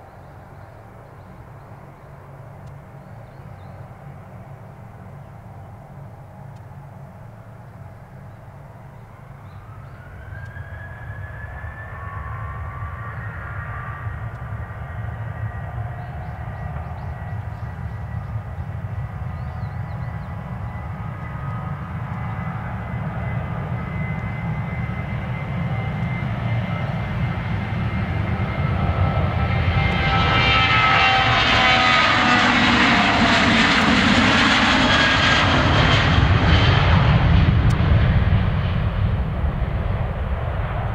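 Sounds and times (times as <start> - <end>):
jet engines spooling up: 5.8 - 40.9
roar of jet passing close: 10.0 - 19.4, 20.5 - 40.9.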